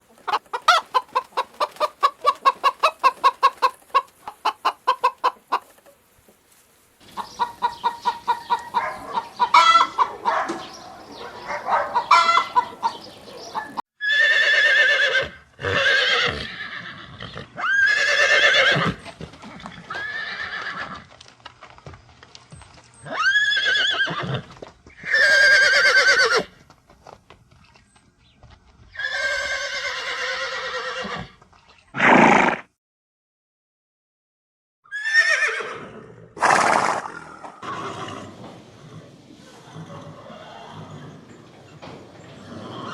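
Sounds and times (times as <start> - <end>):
chickens clucking: 0.0 - 6.4, 7.0 - 13.8, 37.6 - 42.9
loud animal calls: 7.1 - 16.4, 36.4 - 41.4.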